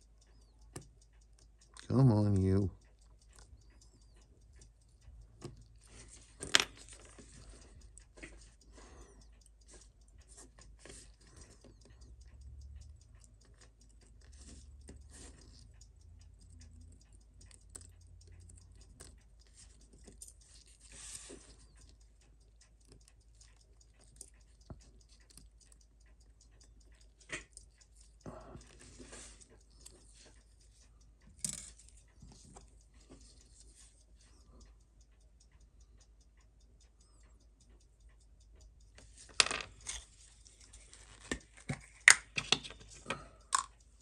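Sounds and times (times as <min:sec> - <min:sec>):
small metallic tool clicks and taps: 0:03.3 - 0:12.0, 0:31.3 - 0:34.0, 0:39.0 - 0:43.8.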